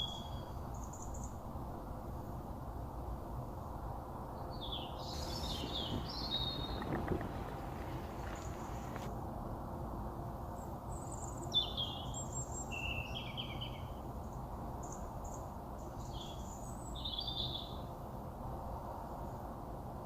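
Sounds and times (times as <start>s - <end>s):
low background noise: 0.0s - 20.0s
small birds chirping: 4.6s - 9.1s.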